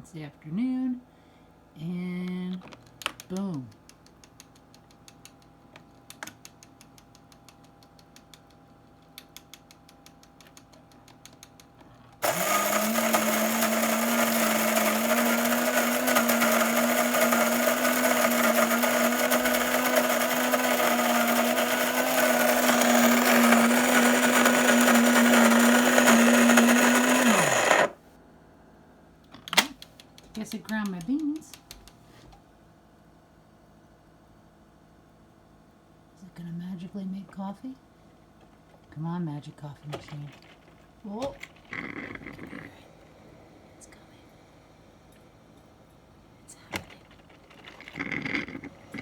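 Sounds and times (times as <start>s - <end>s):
coffee grinder grinding beans: 12.2s - 28.0s, 41.4s - 42.8s, 46.9s - 49.0s.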